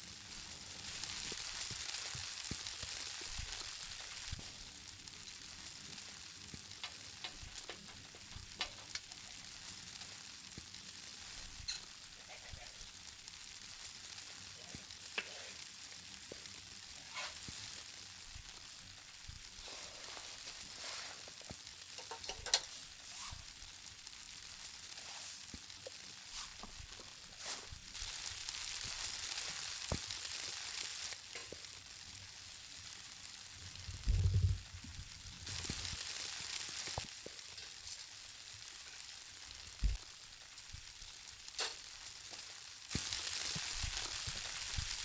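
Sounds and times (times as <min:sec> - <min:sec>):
food sizzling in a hot pan: 0:00.0 - 0:45.0
sharp clicks and pops: 0:00.8 - 0:12.8, 0:19.2 - 0:23.5, 0:24.4 - 0:31.7, 0:33.9 - 0:38.1, 0:38.9 - 0:45.0.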